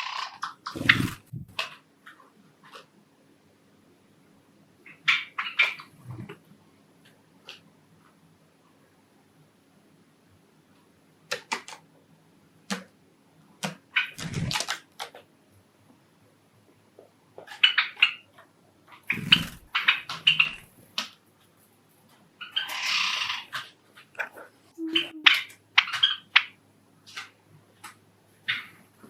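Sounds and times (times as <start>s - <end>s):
sparrows chirping: 0.0s - 1.5s, 19.0s - 20.8s
noisy rustling: 0.6s - 1.7s, 14.0s - 15.1s.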